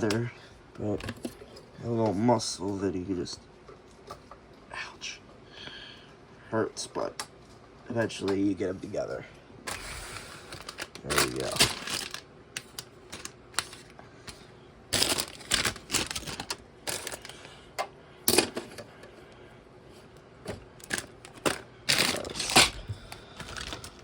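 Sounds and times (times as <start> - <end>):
packaging rustling: 9.7 - 17.5, 20.8 - 24.0.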